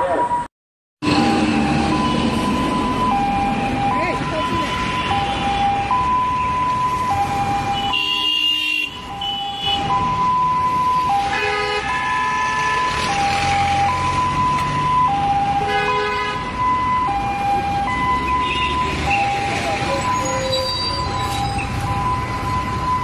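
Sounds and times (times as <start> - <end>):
ambulance two-tone siren: 0.0 - 23.0
vehicle horn blasts: 7.8 - 9.8.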